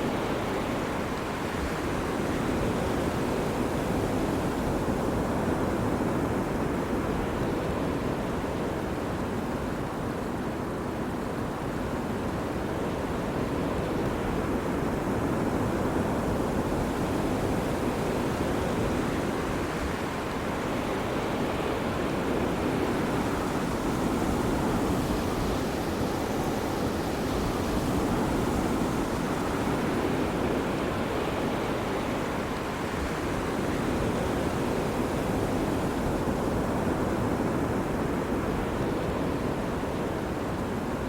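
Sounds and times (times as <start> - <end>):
ocean surf washing onto beach: 9.0 - 41.0.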